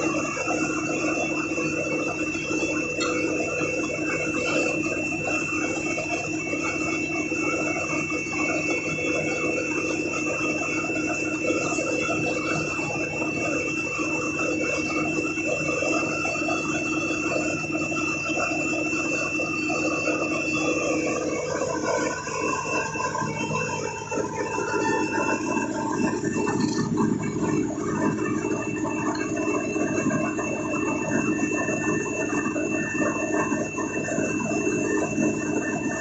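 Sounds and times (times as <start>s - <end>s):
heavy machinery running: 0.0s - 36.0s
high-pitched machine whine: 0.0s - 36.0s.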